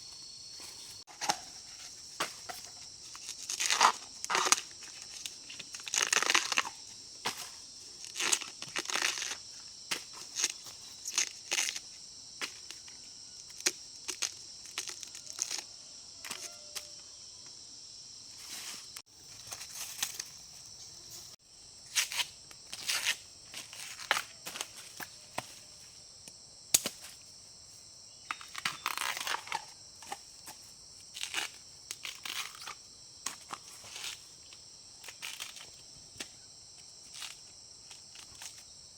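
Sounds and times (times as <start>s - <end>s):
plant material crackling and snapping: 3.2s - 6.8s, 8.0s - 9.4s, 28.3s - 29.7s.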